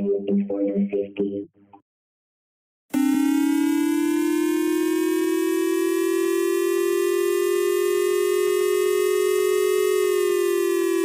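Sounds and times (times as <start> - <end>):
emergency alert siren: 2.9 - 11.0.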